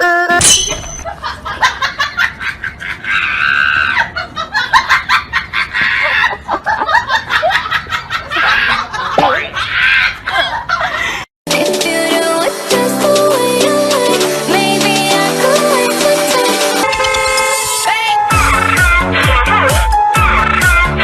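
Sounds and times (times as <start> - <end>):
people laughing and shrieking: 2.3 - 11.1.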